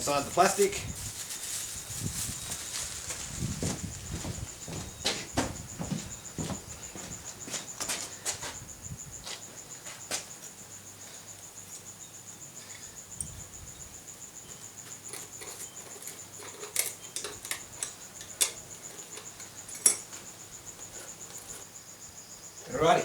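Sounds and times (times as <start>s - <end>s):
parts clicking and tapping: 14.9s - 21.6s.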